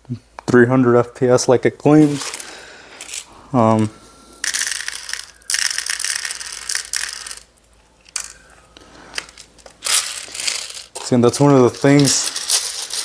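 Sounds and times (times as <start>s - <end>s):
plastic pellets rattling: 4.4s - 7.5s, 8.1s - 8.4s, 9.2s - 13.0s.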